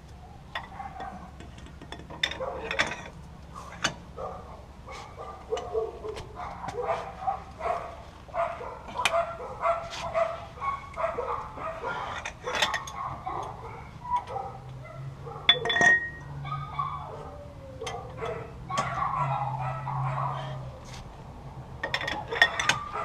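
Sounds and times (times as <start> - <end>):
dog barking and yipping: 0.2 - 1.4, 2.3 - 2.8, 4.2 - 15.7, 16.3 - 20.9, 22.3 - 23.0
metallic clicks and clinks: 12.1 - 14.8, 15.5 - 16.4.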